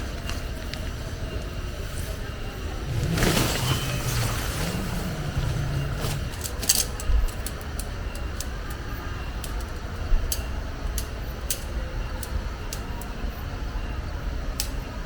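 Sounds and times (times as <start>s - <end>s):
low rumble: 2.4s - 7.6s
sharp light clicks: 6.3s - 13.3s, 14.5s - 14.9s.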